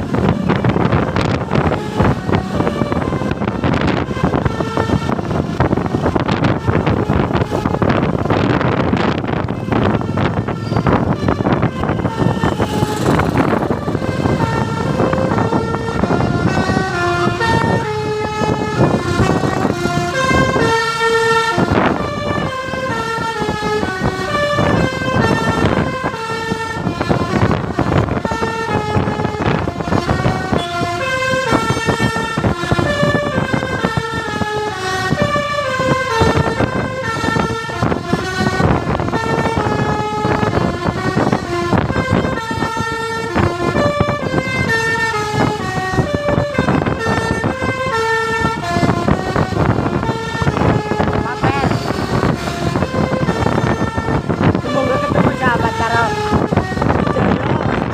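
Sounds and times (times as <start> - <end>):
multi-tone bus horn tune: 11.7 - 57.9.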